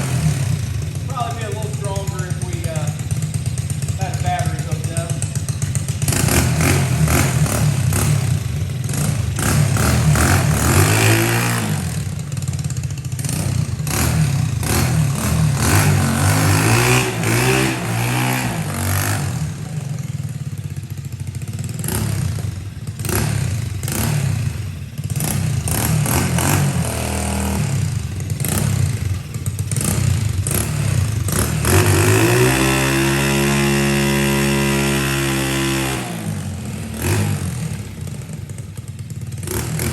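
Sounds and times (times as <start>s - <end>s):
engine clatter: 0.0s - 39.9s
minibike engine revving: 0.0s - 39.9s.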